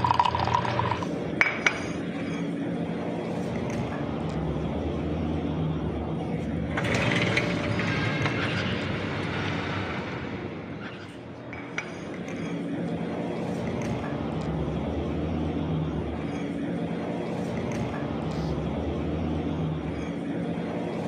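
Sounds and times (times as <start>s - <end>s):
dishes clinking: 0.0s - 2.6s, 11.5s - 12.8s
steady low hum: 0.0s - 21.0s
rushing noise: 4.5s - 11.5s.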